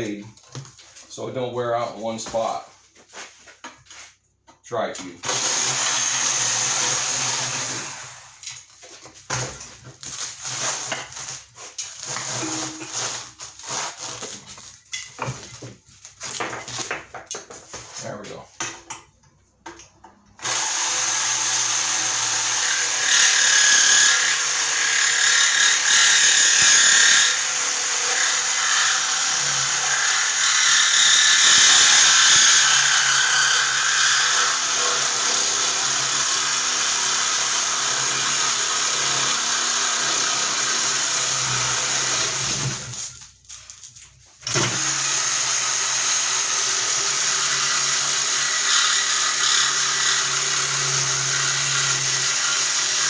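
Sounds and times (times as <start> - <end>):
reciprocating saw cutting metal: 12.0 - 13.9, 20.4 - 42.9.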